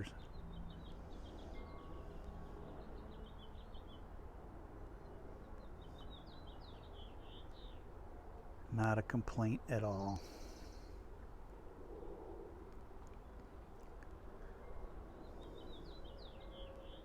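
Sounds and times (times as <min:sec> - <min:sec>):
faint background noise: 0:00.0 - 0:17.0
small songbird chirping: 0:05.0 - 0:07.9, 0:14.7 - 0:17.0.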